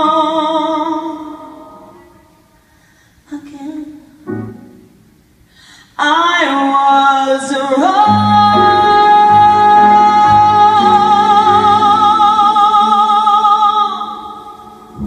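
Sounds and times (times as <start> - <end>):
woman singing long note: 7.8 - 15.0.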